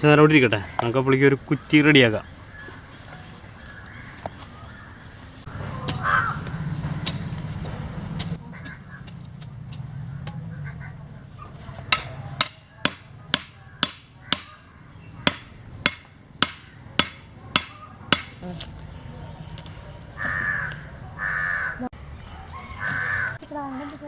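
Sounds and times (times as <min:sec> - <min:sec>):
crow cawing: 0:05.7 - 0:06.7, 0:08.4 - 0:09.0, 0:13.6 - 0:15.0, 0:20.2 - 0:21.9, 0:22.5 - 0:23.4
sharp knocks on bamboo stake: 0:11.9 - 0:14.5.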